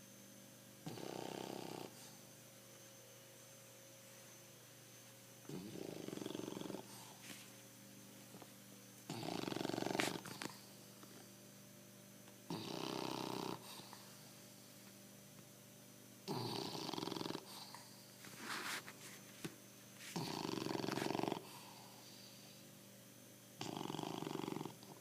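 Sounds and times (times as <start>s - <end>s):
dog snoring: 0.8s - 2.3s, 5.4s - 7.3s, 9.0s - 10.9s, 12.5s - 14.4s, 16.2s - 18.8s, 20.0s - 22.6s, 23.6s - 25.0s.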